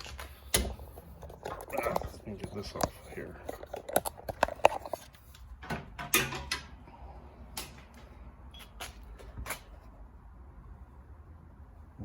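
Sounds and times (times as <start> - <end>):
parts clicking and knocking: 0.0 - 6.8.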